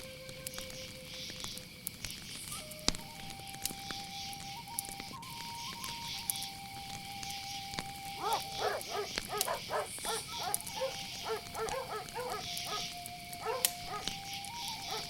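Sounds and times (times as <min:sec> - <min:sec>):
crickets chirping: 0:00.0 - 0:15.0
dog barking: 0:08.2 - 0:14.2, 0:14.8 - 0:15.0.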